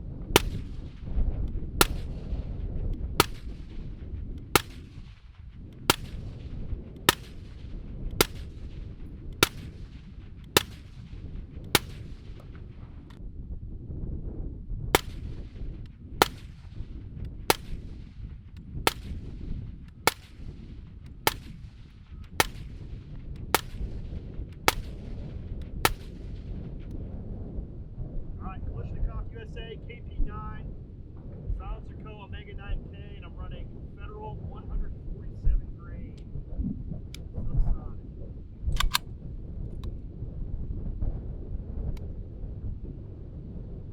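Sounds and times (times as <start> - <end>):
low rumble: 0.0 - 43.9
suppressed rifle shots: 0.2 - 13.2, 14.9 - 26.9, 38.7 - 39.9.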